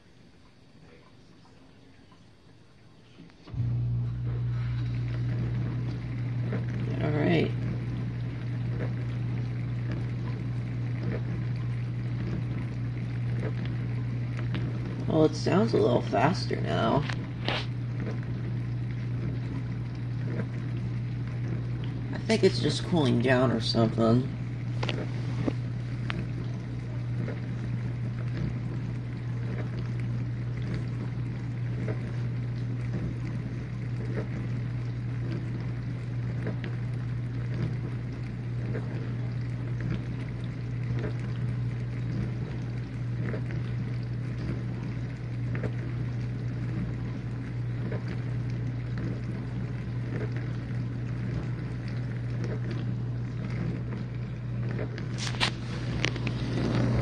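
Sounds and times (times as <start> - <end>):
dishwasher motor hum: 0.0 - 57.0
water spraying and splashing: 47.9 - 57.0.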